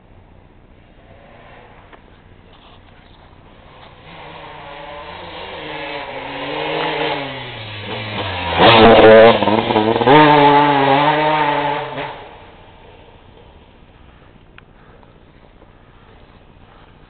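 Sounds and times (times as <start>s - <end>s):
motorcycle passing by: 0.9s - 2.1s, 3.6s - 12.6s.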